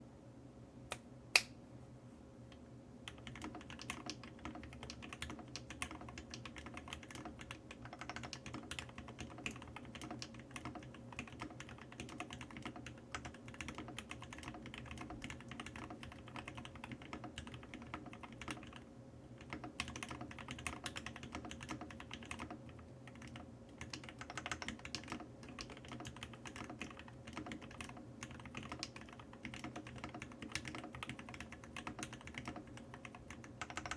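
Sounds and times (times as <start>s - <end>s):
sharp click: 0.9s - 1.6s
fast typing on mechanical keyboard: 3.0s - 18.8s, 19.4s - 33.9s.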